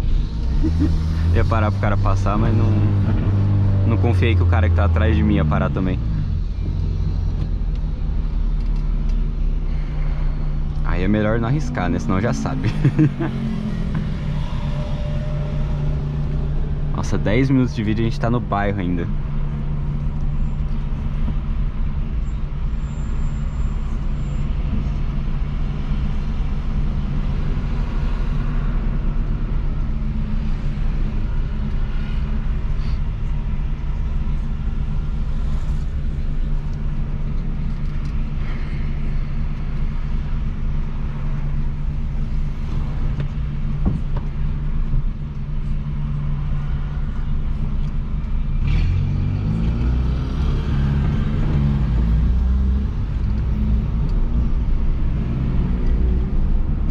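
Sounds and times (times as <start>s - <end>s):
car engine droning at low revs: 0.0s - 56.9s.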